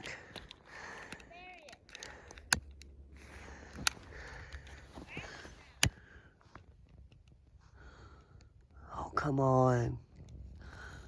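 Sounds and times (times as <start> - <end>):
faint rustling: 3.1 - 7.7.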